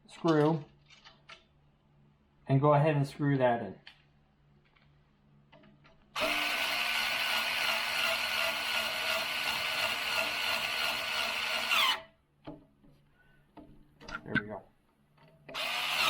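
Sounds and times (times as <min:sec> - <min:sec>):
power drill whining: 0:06.2 - 0:12.1, 0:15.5 - 0:16.0.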